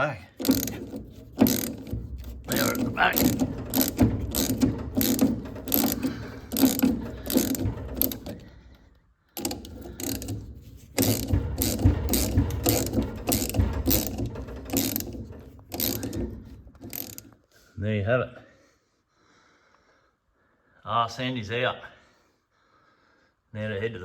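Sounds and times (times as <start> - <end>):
ratchet wrench clicking: 0.2 - 8.7, 9.4 - 17.4.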